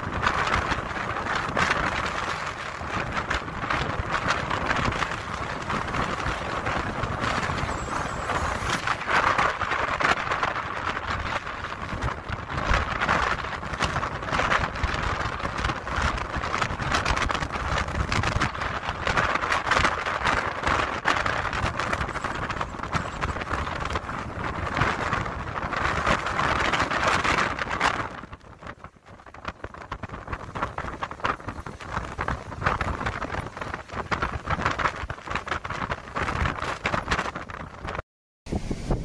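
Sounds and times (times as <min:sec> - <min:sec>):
storm wind and rain rushing: 0:00.0 - 0:39.0.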